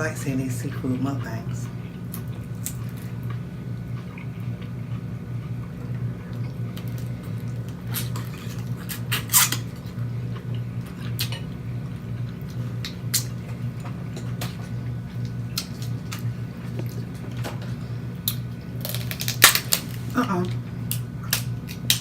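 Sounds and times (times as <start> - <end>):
steady low hum: 0.0 - 22.0
wet mouth smacking and chewing: 1.7 - 9.6
sharp cracks and crackles: 18.2 - 20.0.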